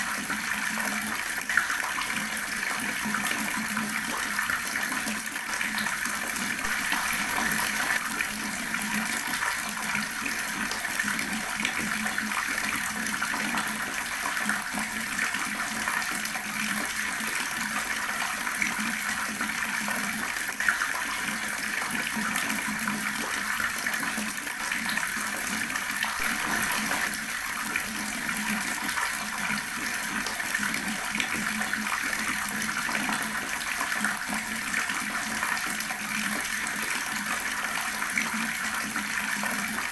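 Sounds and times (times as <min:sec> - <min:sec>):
water tap running: 0:00.0 - 0:17.6, 0:19.6 - 0:39.9.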